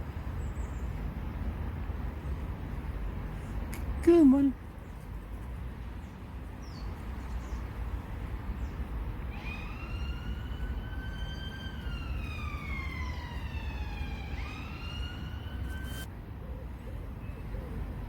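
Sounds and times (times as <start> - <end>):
siren wailing: 9.3 - 16.1.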